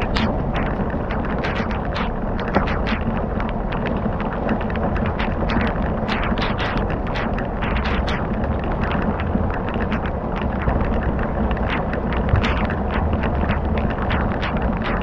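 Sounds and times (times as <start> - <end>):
fire crackling and popping: 0.0 - 15.0
low rumble: 0.0 - 15.0.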